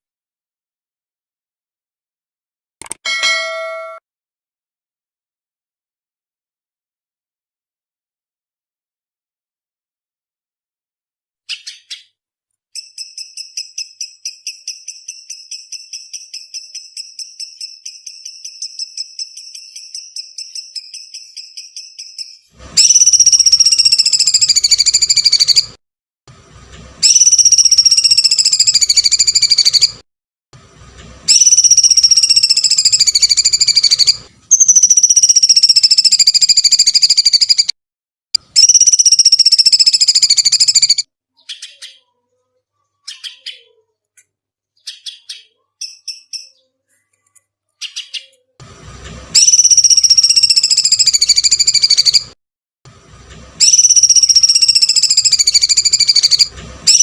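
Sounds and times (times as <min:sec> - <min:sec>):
bird short chirps: 0:11.5 - 0:12.2, 0:12.8 - 0:25.7, 0:49.4 - 0:52.4, 0:53.6 - 0:57.0
bird shrill screeching call: 0:22.8 - 0:25.7, 0:27.0 - 0:30.0, 0:31.3 - 0:37.7, 0:38.6 - 0:42.0, 0:49.4 - 0:52.3, 0:53.6 - 0:57.0.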